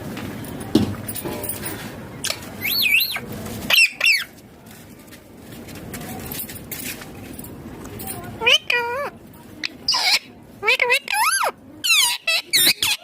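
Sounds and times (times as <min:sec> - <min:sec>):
parakeet high wavering calls: 0:09.9 - 0:13.0.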